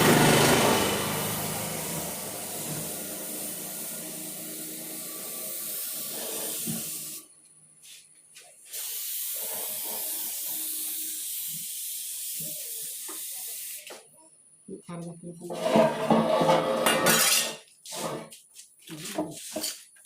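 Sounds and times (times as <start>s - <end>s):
spray gun hissing: 0.0s - 8.0s, 8.7s - 14.0s.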